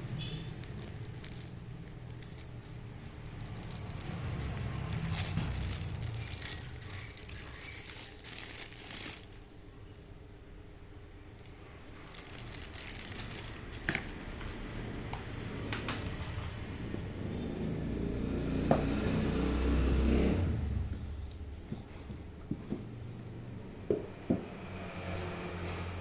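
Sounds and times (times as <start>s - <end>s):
packaging crinkling and rustling: 0.0s - 10.1s, 11.3s - 16.3s.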